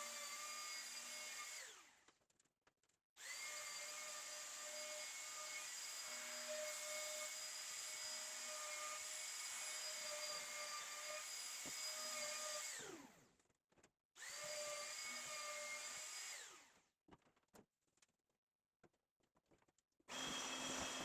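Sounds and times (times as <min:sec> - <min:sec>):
electric router whining: 0:20.1 - 0:21.0.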